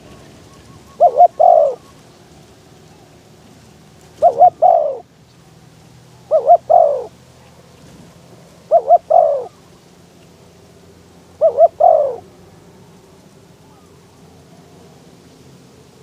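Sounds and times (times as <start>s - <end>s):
dove cooing: 0.0s - 2.1s, 3.8s - 5.1s, 6.2s - 7.2s, 8.6s - 9.6s, 11.2s - 12.4s.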